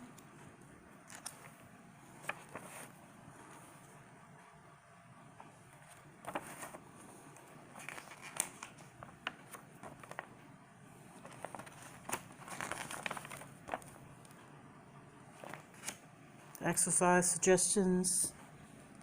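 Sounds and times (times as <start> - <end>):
paper pages rustling: 1.0 - 3.9, 5.4 - 10.4, 11.0 - 14.4, 15.3 - 16.0.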